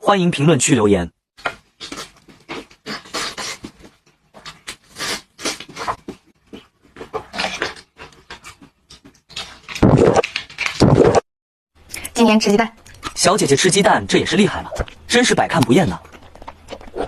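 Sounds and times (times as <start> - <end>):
wet chewing and smacking: 12.8 - 13.2, 14.8 - 17.0.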